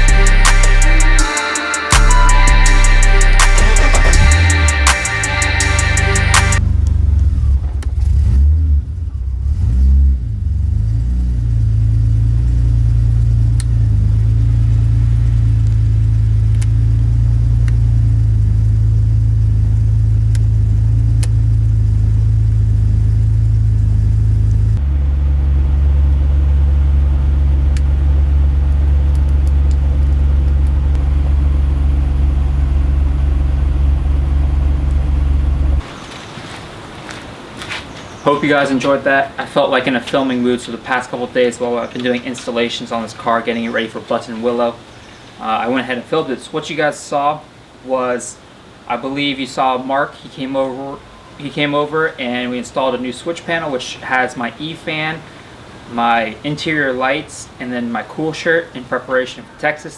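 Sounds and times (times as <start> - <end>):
car engine running: 0.0 - 36.1.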